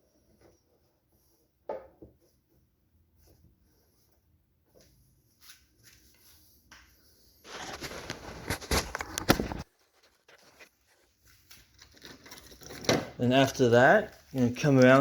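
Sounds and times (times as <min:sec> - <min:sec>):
rustling noise: 0:03.1 - 0:12.1.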